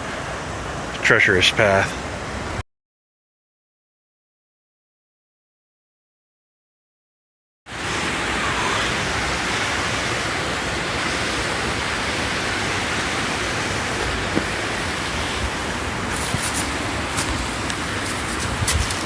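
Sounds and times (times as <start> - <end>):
creek water flowing: 0.0 - 2.6, 7.7 - 19.0.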